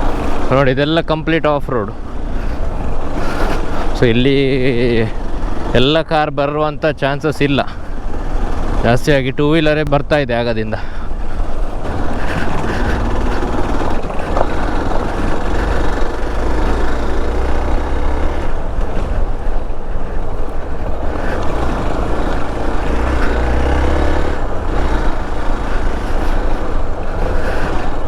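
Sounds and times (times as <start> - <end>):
motorcycle engine running: 0.0 - 6.4, 7.3 - 9.6, 10.8 - 28.0
wind rumble on microphone: 11.0 - 28.0.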